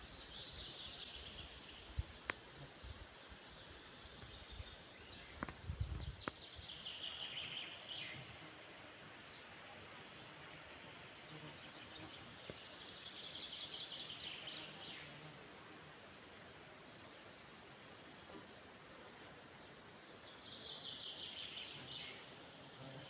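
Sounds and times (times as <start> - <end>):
songbird singing trills: 0.0 - 1.9, 4.4 - 8.3
faint forest background: 0.0 - 23.0.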